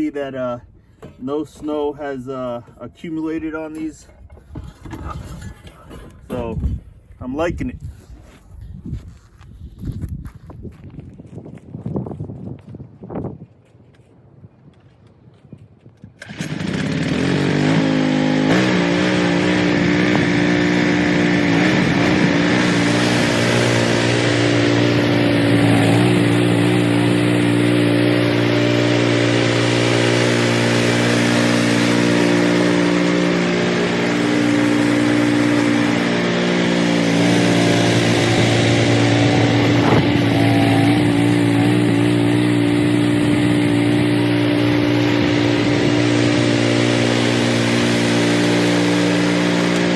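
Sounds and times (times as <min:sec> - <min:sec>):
snowblower engine running: 0:16.2 - 0:49.9.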